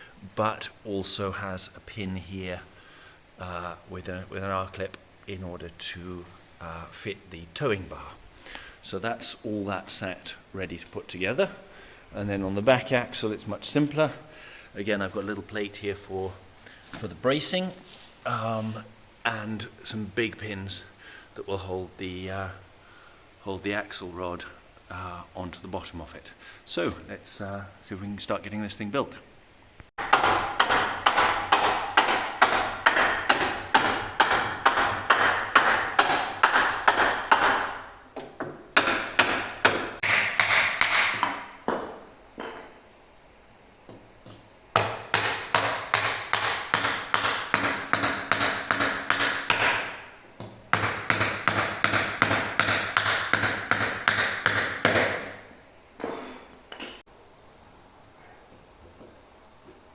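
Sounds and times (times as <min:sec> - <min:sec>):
hammer striking: 0:30.0 - 0:42.7, 0:43.9 - 0:55.4.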